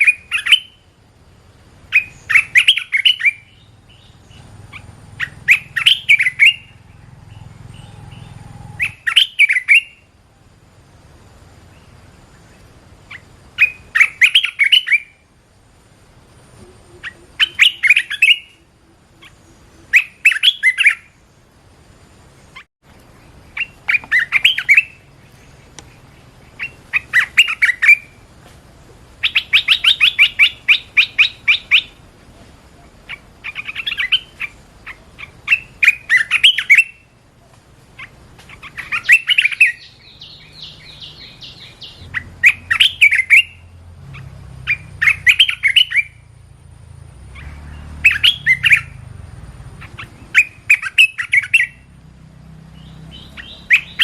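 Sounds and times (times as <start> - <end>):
bird calling with chattering whistles: 0.0 - 15.3, 16.3 - 21.5, 22.2 - 54.0.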